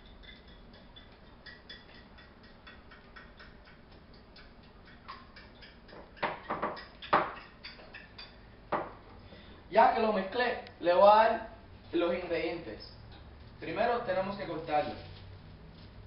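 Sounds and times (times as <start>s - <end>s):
fork beating eggs in a bowl: 0.0s - 8.5s
louder knocks on bowl: 8.7s - 9.0s.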